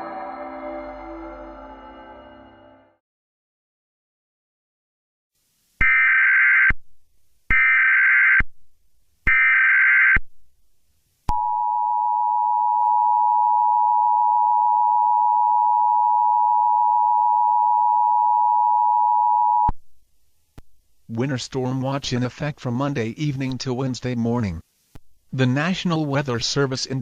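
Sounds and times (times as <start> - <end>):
steady attention tone: 0.0 - 3.0.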